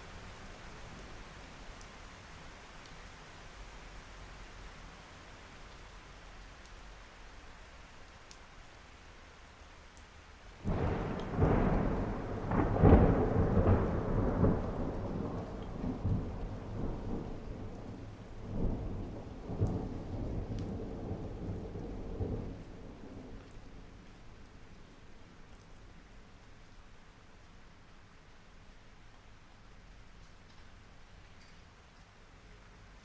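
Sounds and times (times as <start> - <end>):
rain falling: 0.0 - 33.0
rolling thunder: 10.6 - 23.4.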